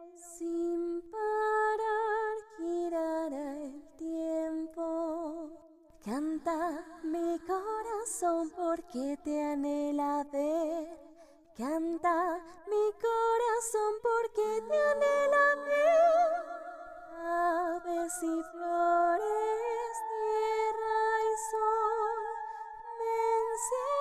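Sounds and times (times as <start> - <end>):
woman singing with vibrato: 11.6 - 24.0.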